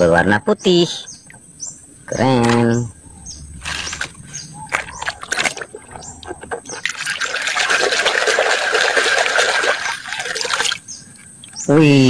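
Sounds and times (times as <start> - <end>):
water splashing over plastic toy: 4.7 - 11.6.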